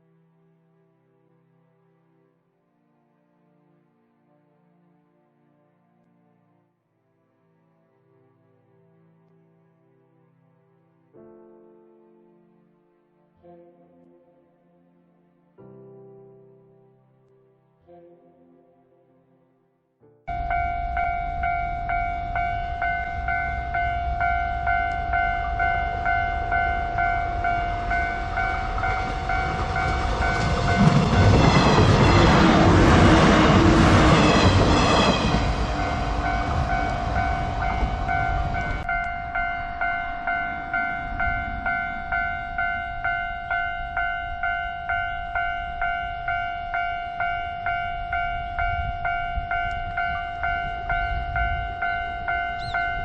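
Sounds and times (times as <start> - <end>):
train wheels on rails: 20.3 - 43.6
level crossing warning bell: 20.3 - 53.0.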